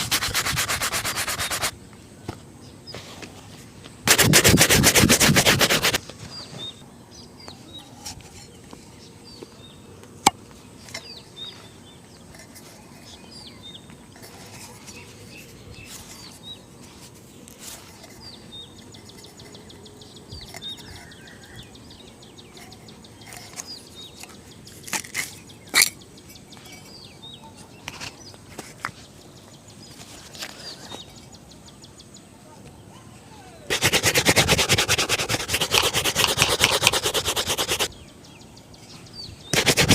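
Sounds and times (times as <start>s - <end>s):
brush rubbing a shoe: 0.0s - 1.8s, 4.1s - 6.0s, 33.7s - 37.9s, 39.5s - 39.9s
small birds chirping: 0.0s - 39.9s.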